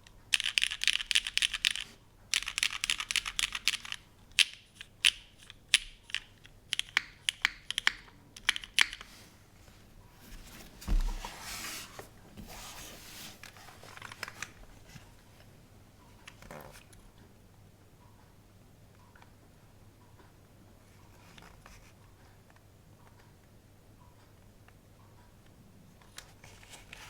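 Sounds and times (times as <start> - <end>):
soft rustling: 9.0 - 15.5
low thump: 10.8 - 11.3.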